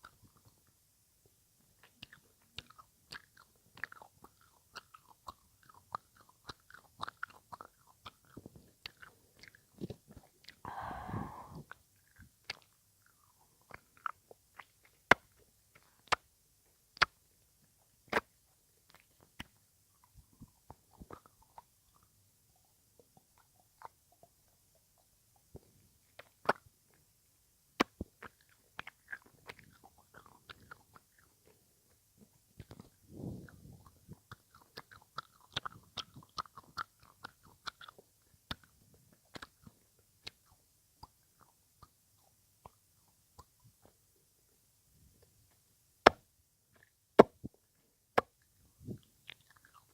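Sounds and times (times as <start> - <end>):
tongue and lip clicks: 0.0 - 0.8, 1.6 - 27.1, 27.8 - 44.0, 45.2 - 49.9
mouth smacking: 1.8 - 16.2, 18.9 - 22.2, 27.8 - 43.8, 48.2 - 49.9.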